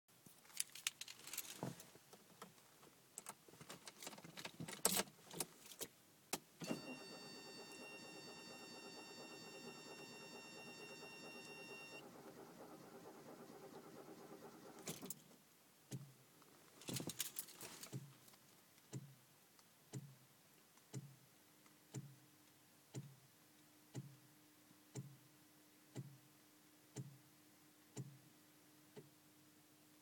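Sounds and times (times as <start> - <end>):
keys rattling: 0.5 - 1.6, 16.8 - 17.9
steady hum: 6.6 - 15.0.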